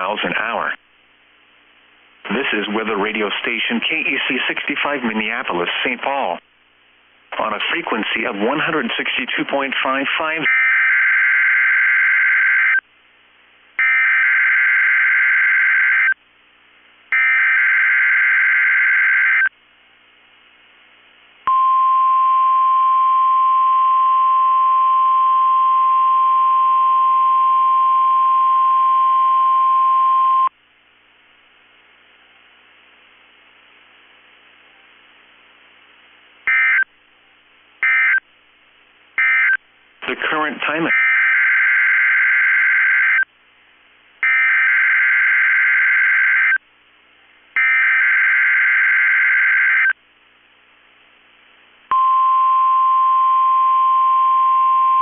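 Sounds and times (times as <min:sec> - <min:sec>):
steady alarm tone: 0:10.4 - 0:12.8, 0:13.8 - 0:16.2, 0:17.1 - 0:19.5, 0:36.5 - 0:36.9, 0:37.8 - 0:38.2, 0:39.2 - 0:39.6, 0:44.2 - 0:46.6, 0:47.6 - 0:50.0.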